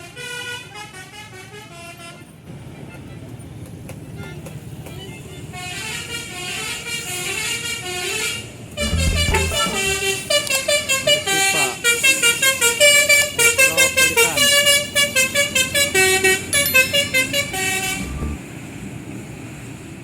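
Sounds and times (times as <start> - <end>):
bus horn playing a tune: 5.4 - 18.4.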